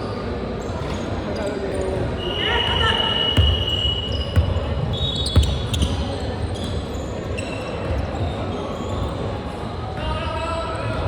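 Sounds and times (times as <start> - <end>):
shoe squeaks: 0.1 - 9.3
basketball bouncing on court: 1.7 - 9.1.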